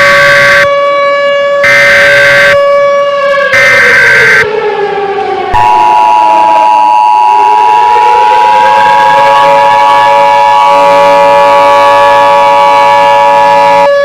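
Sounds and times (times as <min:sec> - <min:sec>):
civil defense siren: 0:00.0 - 0:14.0
two-tone alert signal: 0:05.6 - 0:07.5.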